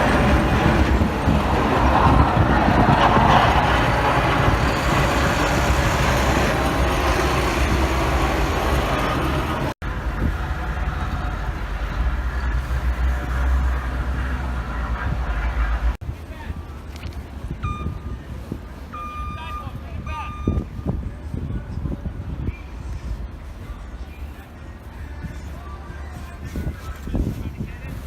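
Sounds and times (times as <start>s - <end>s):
wind roaring: 0.0s - 24.0s
city traffic: 0.0s - 28.0s
wind rumble on microphone: 0.0s - 28.0s.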